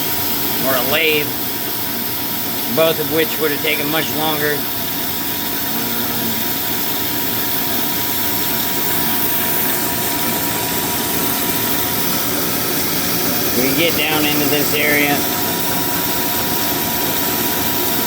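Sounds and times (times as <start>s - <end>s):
bandsaw cutting metal: 0.0s - 18.0s.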